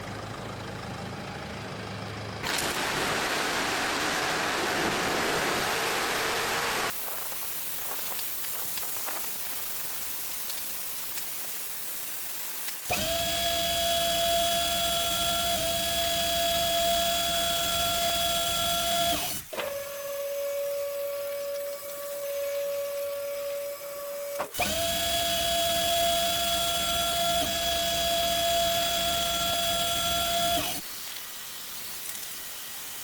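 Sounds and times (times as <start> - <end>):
water spraying hiss: 2.5 - 13.1, 30.8 - 33.0
motor whine: 12.9 - 30.8.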